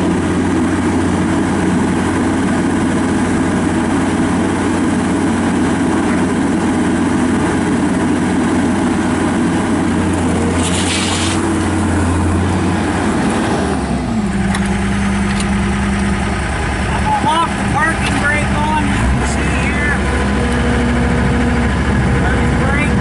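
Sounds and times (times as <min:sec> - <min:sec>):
loader diesel engine running: 0:00.0 - 0:23.0
brief hiss: 0:10.6 - 0:11.4.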